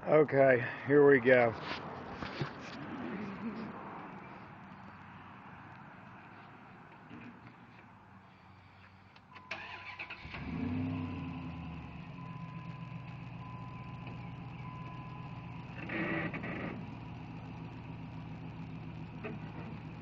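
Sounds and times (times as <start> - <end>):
vehicle engine idling: 0.4 - 20.0
engine starter cranking: 9.3 - 11.6.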